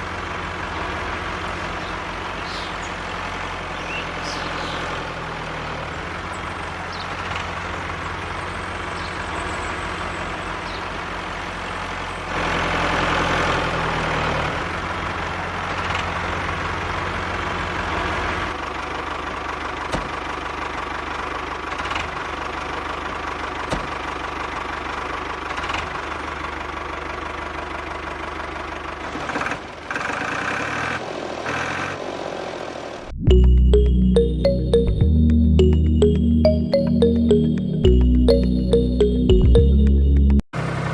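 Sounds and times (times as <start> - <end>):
tractor engine running: 0.0 - 30.8.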